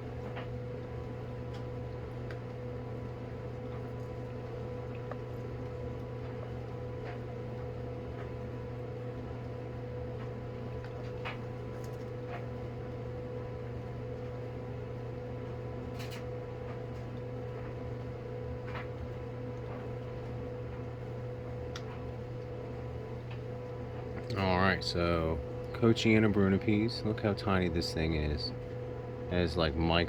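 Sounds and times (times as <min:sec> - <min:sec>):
electrical fan hum: 0:00.0 - 0:30.0.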